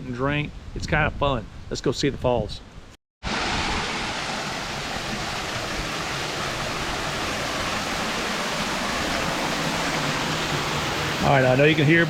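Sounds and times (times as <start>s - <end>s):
small waterfall rushing: 3.2s - 12.0s.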